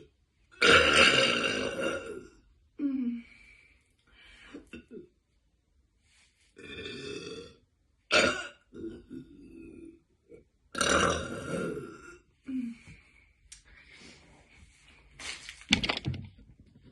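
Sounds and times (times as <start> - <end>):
woman burping: 0.6 - 3.2, 6.6 - 9.9, 10.7 - 12.8.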